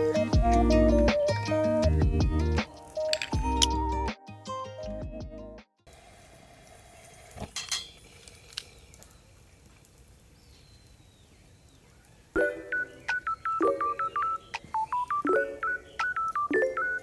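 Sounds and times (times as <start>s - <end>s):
camp cooking gear clinking: 2.7s - 4.0s, 5.9s - 17.0s.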